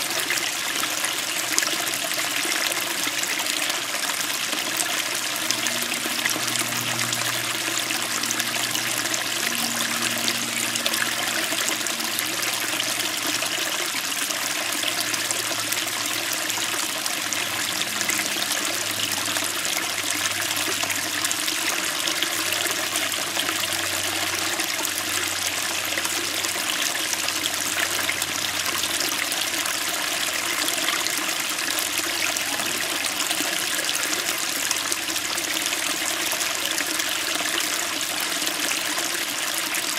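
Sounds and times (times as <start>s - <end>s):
creek flowing over stones: 0.0s - 39.9s.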